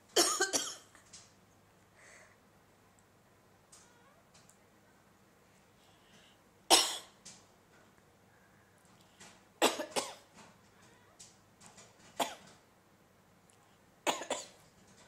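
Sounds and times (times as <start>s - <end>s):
person coughing: 0.2s - 0.9s, 6.7s - 7.1s, 14.1s - 14.6s.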